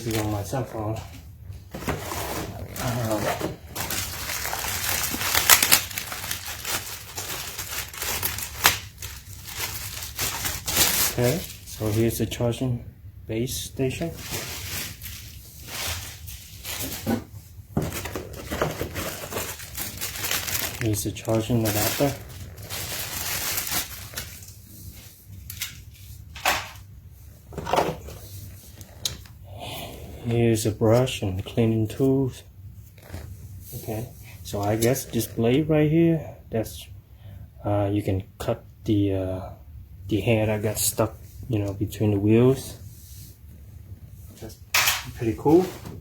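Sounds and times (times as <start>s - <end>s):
packaging rustling and crinkling: 0.0s - 12.3s, 14.0s - 26.8s
low steady hum: 0.0s - 46.0s.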